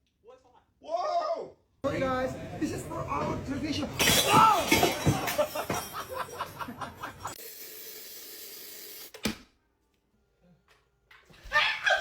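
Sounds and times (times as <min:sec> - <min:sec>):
people laughing: 0:04.9 - 0:07.4, 0:11.4 - 0:12.0.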